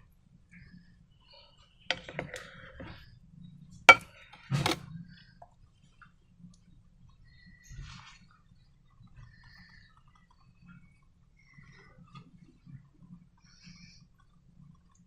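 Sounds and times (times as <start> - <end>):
hard objects clicking: 1.9 - 2.9, 3.9 - 4.8.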